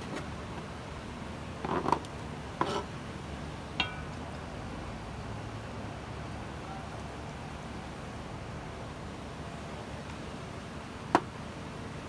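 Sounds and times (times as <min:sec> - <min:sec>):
short ringing clink: 0:03.8 - 0:04.2.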